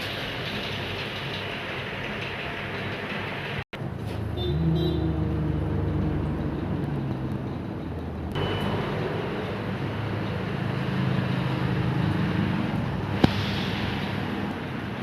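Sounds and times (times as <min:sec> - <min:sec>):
rushing noise: 0:08.4 - 0:15.0.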